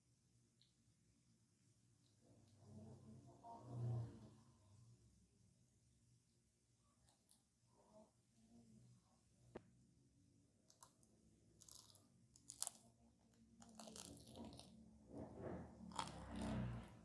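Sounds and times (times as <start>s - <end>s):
crunchy bites and chewing: 11.6s - 12.8s, 13.6s - 14.7s.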